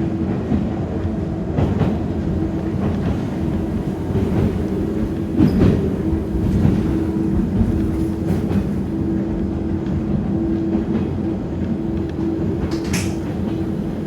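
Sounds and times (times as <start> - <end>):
train rumble and hum: 0.0 - 14.0
wheels clicking over rail joints: 12.6 - 13.7.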